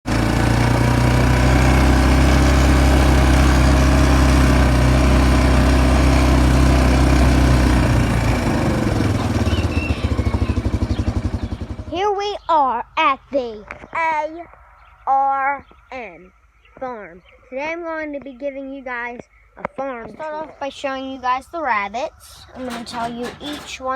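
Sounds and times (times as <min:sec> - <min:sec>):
small engine running: 0:00.1 - 0:12.1, 0:22.4 - 0:23.9.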